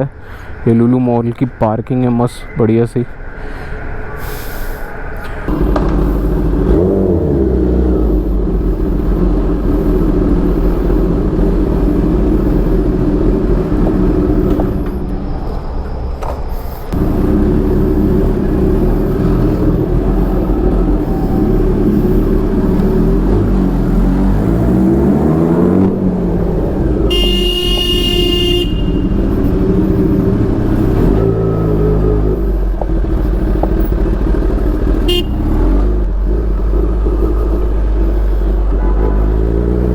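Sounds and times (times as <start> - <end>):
motorcycle engine revving: 5.5 - 15.8, 16.9 - 39.9
vehicle horn: 26.8 - 32.0, 34.8 - 35.9.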